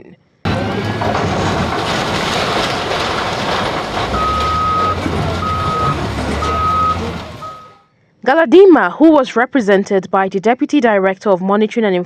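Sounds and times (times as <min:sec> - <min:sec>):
diesel engine running: 0:00.5 - 0:07.8
reversing alarm beeping: 0:04.1 - 0:07.8.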